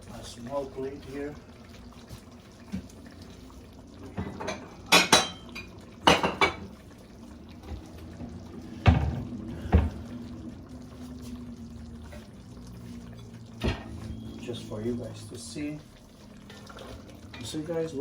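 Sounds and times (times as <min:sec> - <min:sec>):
dishes and utensil clinking: 0:04.1 - 0:06.7.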